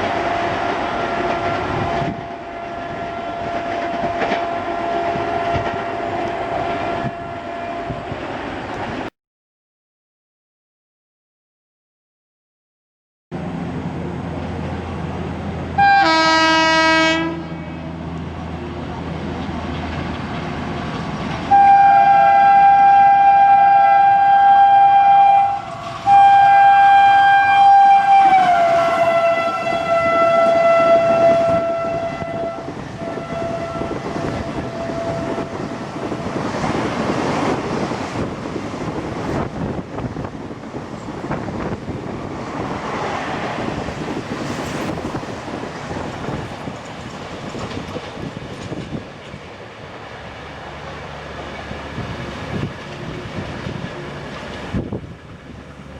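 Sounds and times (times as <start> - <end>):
train coaches rattling by: 0.0 - 9.1, 13.4 - 55.9
locomotive horn blasts: 0.2 - 8.1, 15.8 - 17.9, 21.5 - 36.7.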